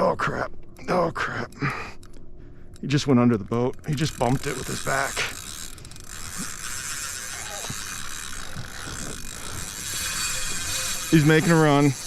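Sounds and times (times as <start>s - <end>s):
fishing reel drag buzzing: 3.8s - 12.0s.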